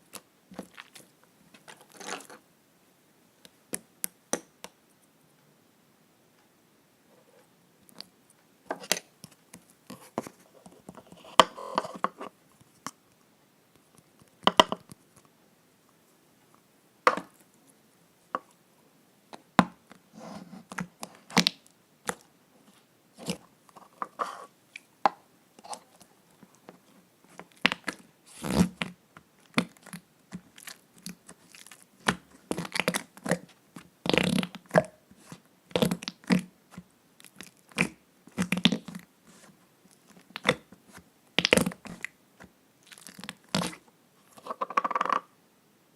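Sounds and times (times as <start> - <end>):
slime squelching: 0.1 - 1.1, 27.3 - 43.8.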